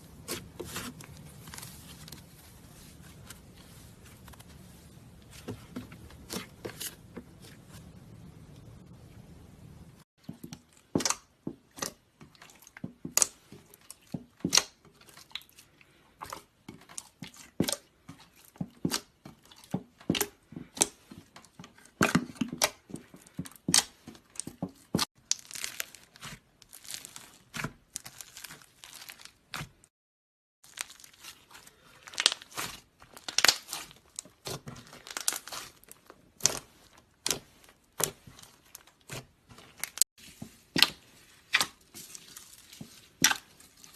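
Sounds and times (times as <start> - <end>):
slime crinkly stretching: 0.2 - 5.6, 25.2 - 29.8, 30.6 - 43.9
slime popping and crackling: 25.2 - 29.4, 30.6 - 40.0.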